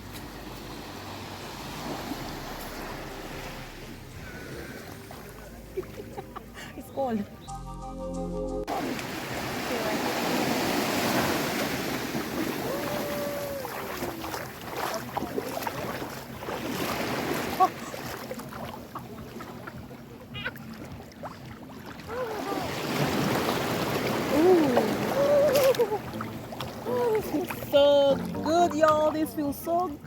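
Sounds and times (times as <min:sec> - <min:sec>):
sea surf washing: 0:00.0 - 0:07.2, 0:08.7 - 0:30.0.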